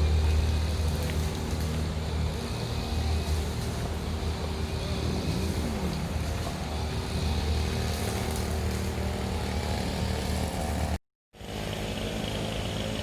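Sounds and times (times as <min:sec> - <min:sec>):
engine running: 0:00.0 - 0:13.0.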